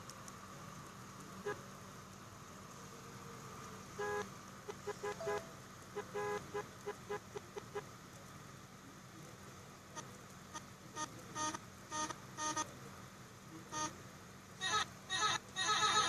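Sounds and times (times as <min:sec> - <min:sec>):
multi-tone vehicle horn tooting a tune: 0:05.2 - 0:05.5.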